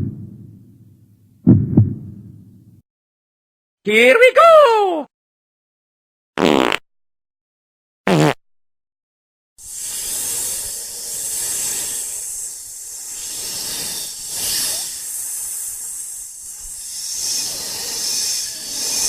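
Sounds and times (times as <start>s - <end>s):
rushing hiss: 9.6s - 19.0s.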